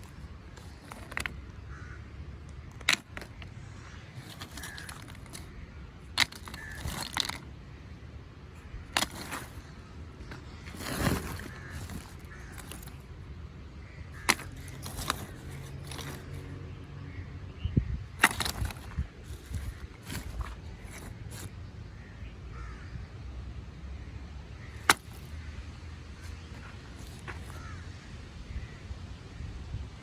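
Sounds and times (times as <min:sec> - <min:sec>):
scraping: 0:00.0 - 0:16.6, 0:18.1 - 0:21.6, 0:24.6 - 0:25.4, 0:26.2 - 0:27.8.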